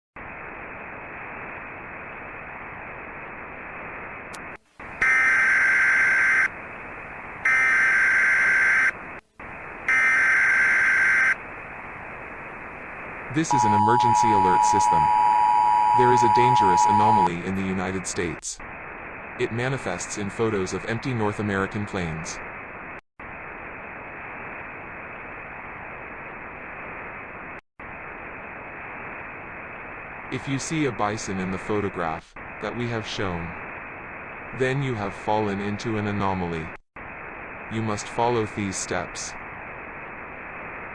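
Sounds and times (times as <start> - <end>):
dull static hiss: 0.2 - 40.9
radio static: 13.2 - 18.4
buzzy data bursts: 13.4 - 17.3.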